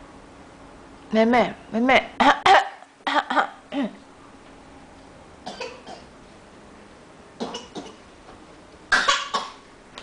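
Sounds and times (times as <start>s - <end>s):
toddler coughing: 5.5s - 6.1s, 7.4s - 8.0s, 8.9s - 9.6s.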